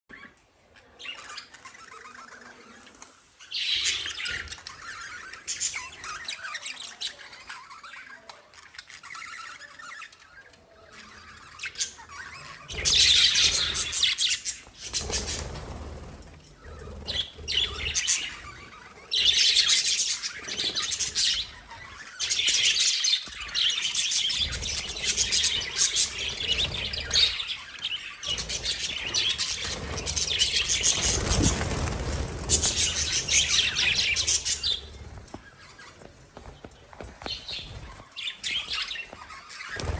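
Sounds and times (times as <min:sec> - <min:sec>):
parrots chirping and squawking: 0:00.1 - 0:39.9.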